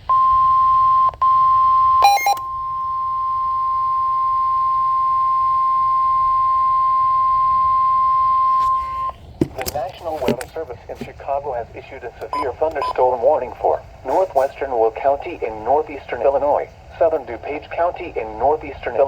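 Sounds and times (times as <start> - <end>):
high alarm tone: 0.1 - 9.1
burst of beeping tones: 2.0 - 2.5, 12.3 - 13.0.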